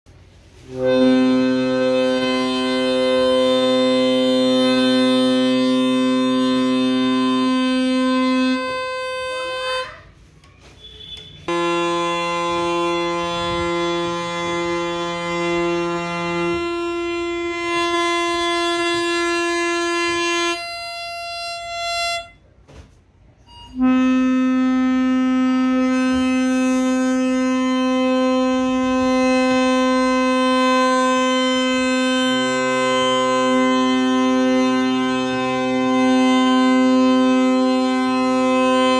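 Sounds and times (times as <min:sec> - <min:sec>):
free-reed drones: 0:11.5 - 0:20.6, 0:24.0 - 0:38.9.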